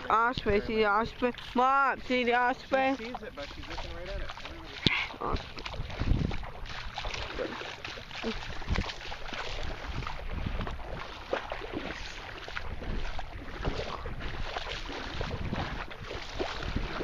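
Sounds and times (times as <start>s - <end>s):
wind on microphone: 3.6s - 7.6s, 8.2s - 17.0s.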